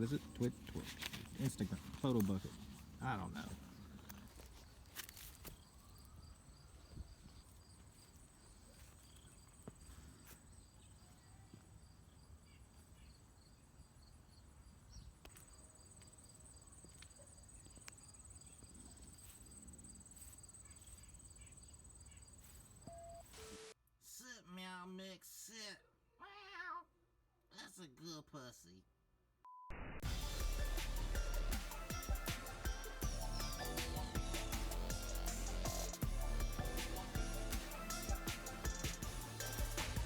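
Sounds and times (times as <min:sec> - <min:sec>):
crickets chirping: 0:00.0 - 0:23.0.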